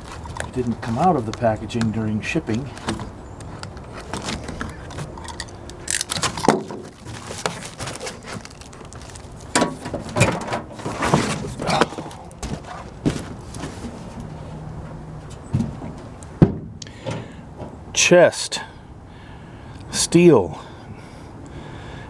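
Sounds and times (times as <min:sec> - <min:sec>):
packaging rustling: 0:00.0 - 0:14.2
knocks and clunks on steel chest: 0:06.1 - 0:07.6.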